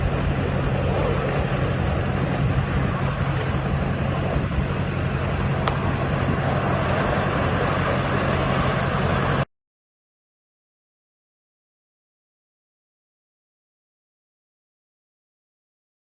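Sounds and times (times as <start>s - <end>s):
wind buffeting microphone: 0.0s - 9.4s
boat engine running: 0.0s - 9.5s
rushing water: 0.0s - 9.5s.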